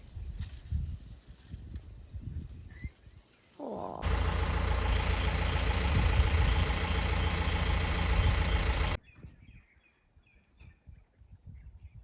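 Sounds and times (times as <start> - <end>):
vehicle engine running: 4.0 - 9.0.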